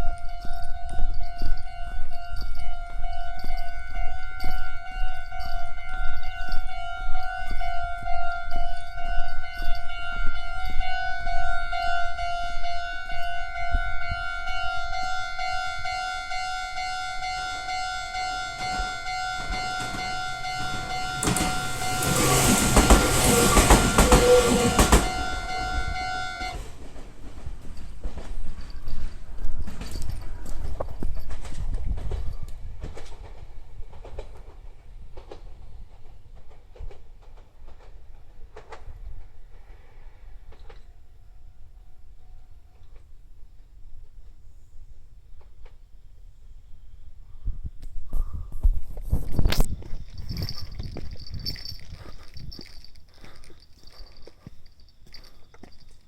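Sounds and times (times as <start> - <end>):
level crossing alarm clanging: 0.0 - 27.0
train wheel and rail clatter: 0.0 - 41.0, 48.2 - 56.0.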